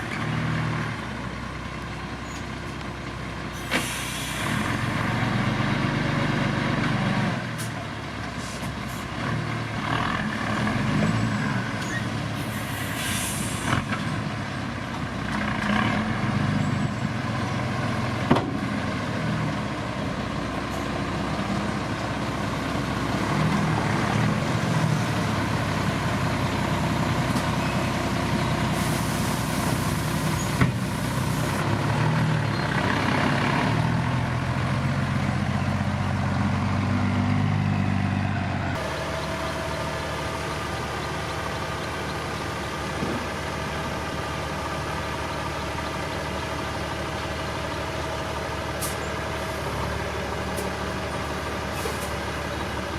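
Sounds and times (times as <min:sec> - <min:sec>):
heavy diesel engines running: 0:00.0 - 0:52.9
air release hisses: 0:12.5 - 0:13.7.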